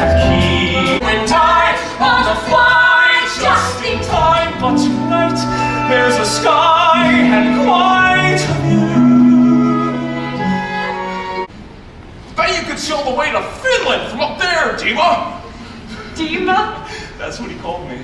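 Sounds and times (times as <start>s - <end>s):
orchestral accompaniment: 0.0s - 11.5s
person singing with vibrato: 0.0s - 11.5s.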